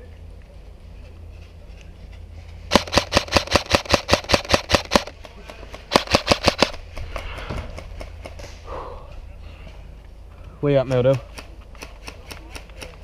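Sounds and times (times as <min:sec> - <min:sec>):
airsoft gun shots: 0:02.7 - 0:06.8.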